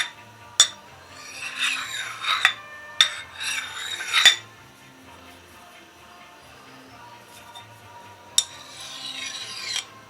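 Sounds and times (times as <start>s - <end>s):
blade scraping on steel: 0.0s - 4.6s, 8.4s - 10.0s.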